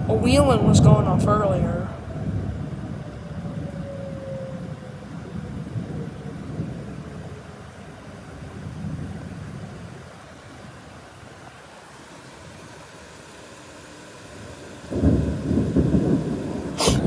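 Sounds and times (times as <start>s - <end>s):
siren winding down: 0.0s - 7.6s, 11.9s - 17.0s.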